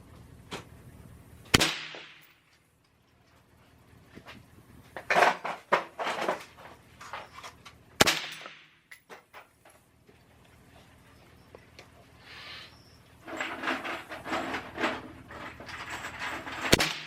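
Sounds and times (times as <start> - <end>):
gunshots: 1.5 - 2.3, 8.0 - 8.7, 16.7 - 17.0.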